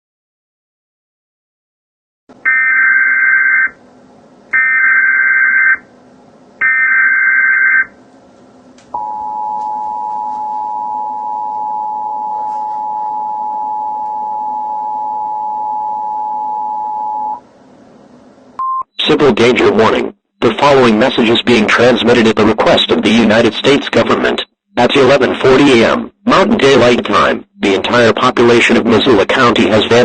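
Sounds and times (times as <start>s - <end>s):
two-tone attention signal: 9.0s - 17.4s.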